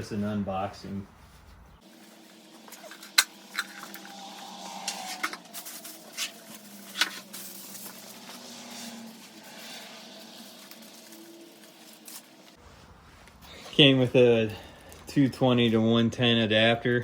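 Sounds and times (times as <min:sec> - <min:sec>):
packaging rustling: 0:05.2 - 0:12.6.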